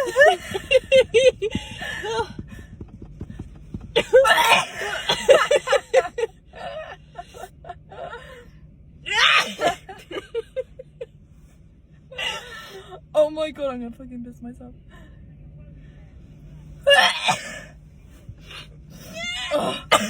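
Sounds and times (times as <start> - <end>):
person coughing and sneezing: 4.0 - 5.9, 16.9 - 17.7, 19.6 - 20.0.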